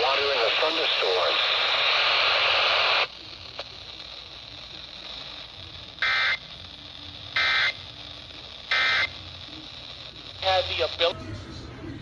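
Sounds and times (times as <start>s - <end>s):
radio static hiss: 0.0s - 11.2s.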